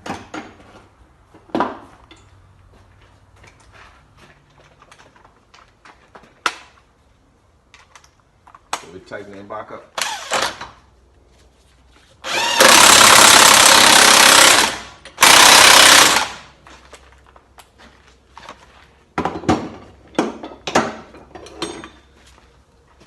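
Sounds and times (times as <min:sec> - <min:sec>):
impact wrench hammering: 0:12.3 - 0:16.4.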